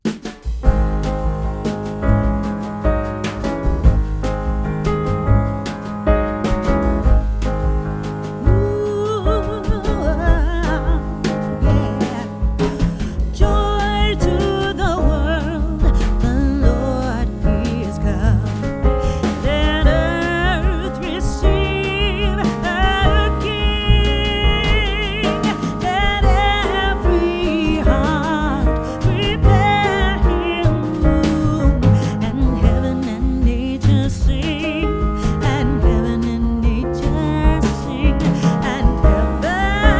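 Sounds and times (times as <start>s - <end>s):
song with singing and beat: 8.4s - 39.9s.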